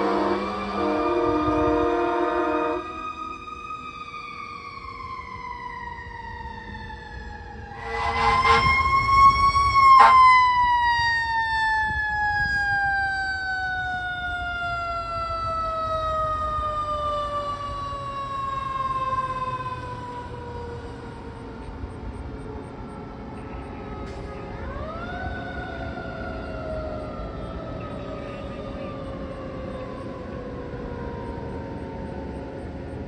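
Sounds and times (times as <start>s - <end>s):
mechanical siren winding down: 0.0s - 22.7s
fire truck passing: 0.0s - 33.0s.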